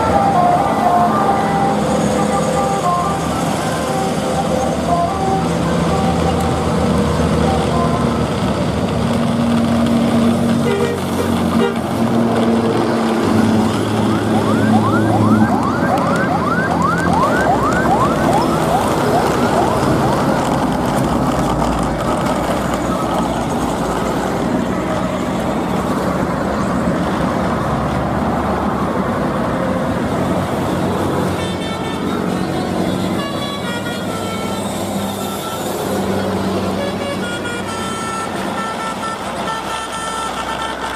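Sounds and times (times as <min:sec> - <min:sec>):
vehicle noise: 0:00.0 - 0:40.9
vehicle horn tones: 0:10.6 - 0:12.0
siren-like whoops: 0:14.0 - 0:20.6.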